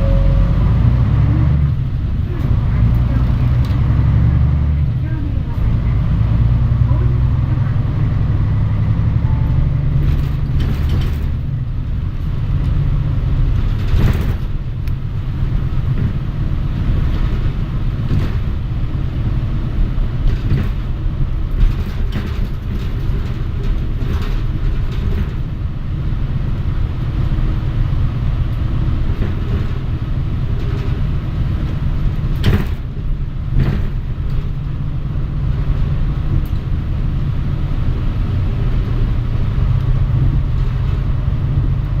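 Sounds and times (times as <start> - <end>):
bus engine and road drone: 0.0 - 42.0
body knocks and rattles: 10.0 - 12.8, 20.2 - 25.6, 29.1 - 34.8.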